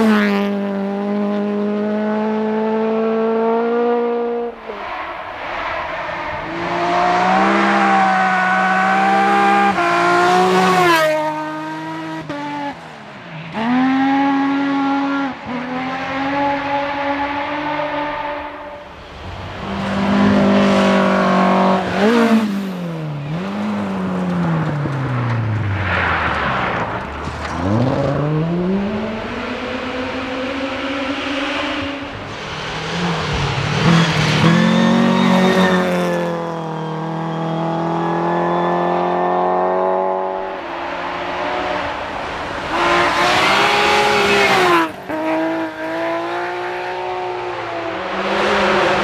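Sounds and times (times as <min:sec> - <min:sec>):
rally cars revving past: 0:00.0 - 0:49.0.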